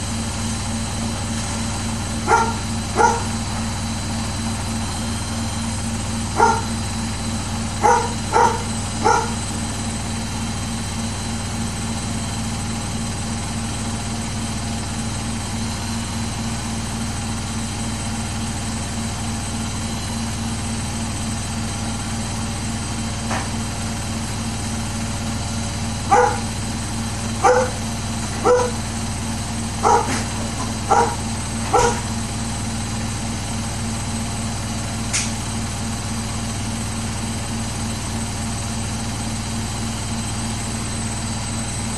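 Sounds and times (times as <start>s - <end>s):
washing machine hum: 0.0s - 41.9s
dog barking: 2.2s - 3.4s, 6.4s - 6.8s, 7.8s - 9.4s, 26.1s - 26.6s, 27.4s - 27.8s, 28.4s - 28.8s, 29.8s - 32.1s.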